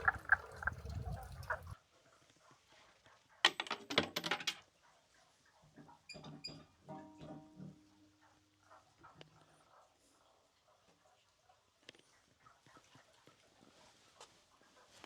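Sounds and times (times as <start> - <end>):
frogs croaking: 0.0 - 1.8.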